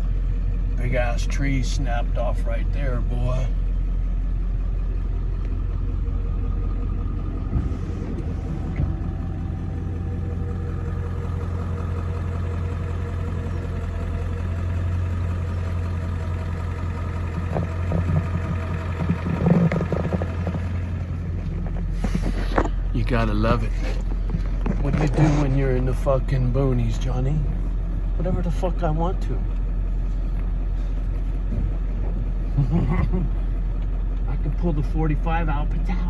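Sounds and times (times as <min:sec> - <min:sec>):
truck engine running at low speed: 0:00.0 - 0:36.0
knocks and rattles: 0:17.2 - 0:22.8.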